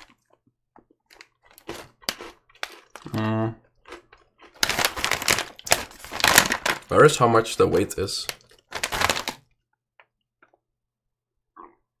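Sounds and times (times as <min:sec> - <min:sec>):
plastic snack packet crinkling: 0:00.0 - 0:03.1, 0:03.8 - 0:09.6
person humming: 0:03.1 - 0:03.6.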